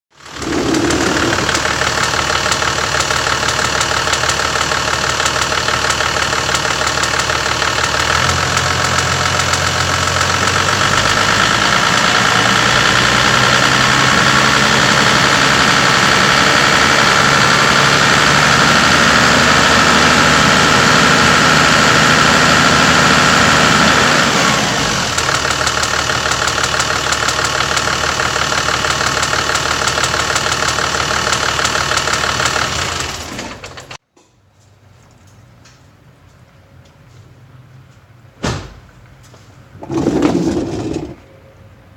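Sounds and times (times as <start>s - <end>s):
diesel engine running: 0.2s - 34.0s
fast regular engine ticking: 0.2s - 34.0s.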